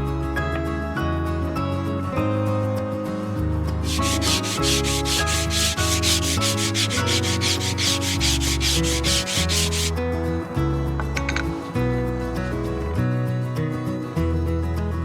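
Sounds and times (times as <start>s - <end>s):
sandpaper sanding by hand: 3.8s - 10.0s.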